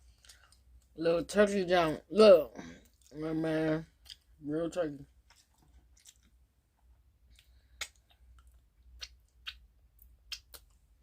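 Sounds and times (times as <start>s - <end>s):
faint chewing: 0.0s - 1.0s, 5.1s - 10.8s
wet mouth clicks and smacks: 5.9s - 6.4s, 7.3s - 10.8s.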